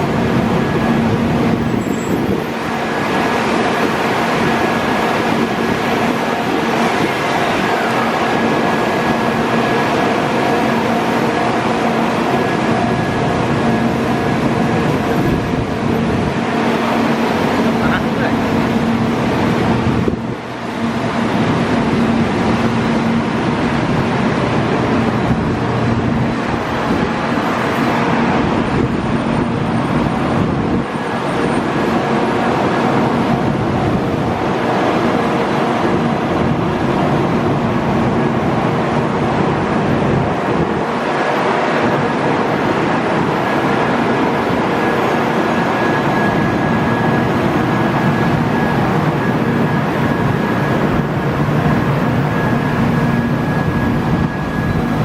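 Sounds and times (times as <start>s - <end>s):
train rolling over crossing: 0.0s - 55.0s.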